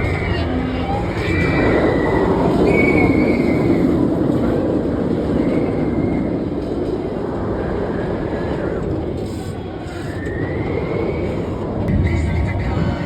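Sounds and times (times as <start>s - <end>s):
roller coaster train rumbling: 0.0s - 13.0s
faint high squeals: 0.8s - 4.5s, 9.2s - 11.9s.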